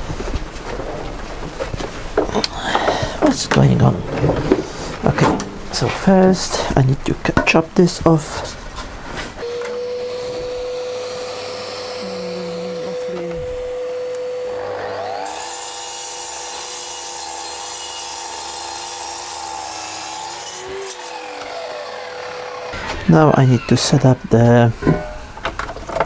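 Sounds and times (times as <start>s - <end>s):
dust extractor whine: 2.2s - 7.0s, 9.4s - 15.4s, 21.4s - 25.6s
mitre saw cutting wood: 9.4s - 25.6s.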